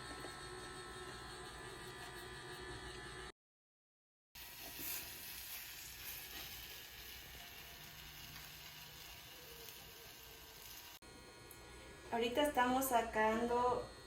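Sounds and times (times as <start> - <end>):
food sizzling in a pan: 4.4 - 11.0.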